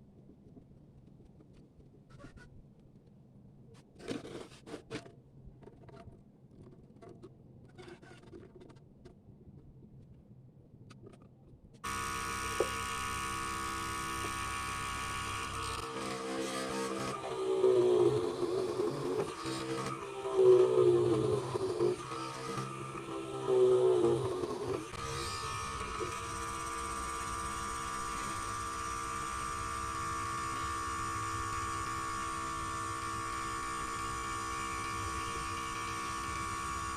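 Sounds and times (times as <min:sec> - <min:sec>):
electric motor whining: 0:11.8 - 0:36.9.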